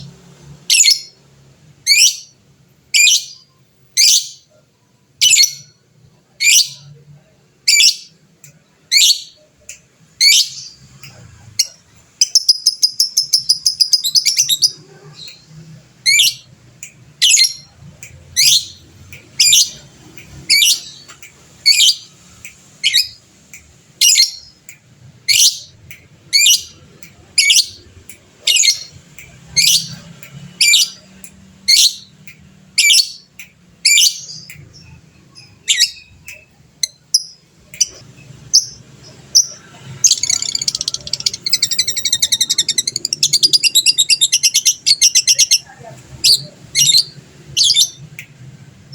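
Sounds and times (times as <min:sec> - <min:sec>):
lovebird rapid chattering: 0:35.7 - 0:45.6
lovebird high calls: 0:36.8 - 0:48.0.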